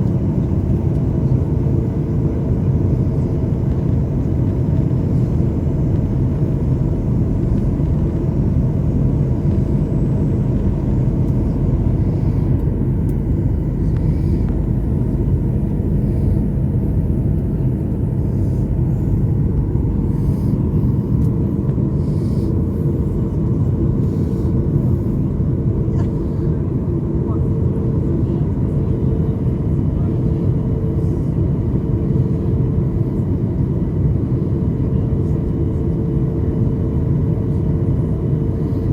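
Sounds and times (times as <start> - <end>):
faint steady hum: 0.0 - 27.4
jet engines and airflow rumble: 0.0 - 38.9.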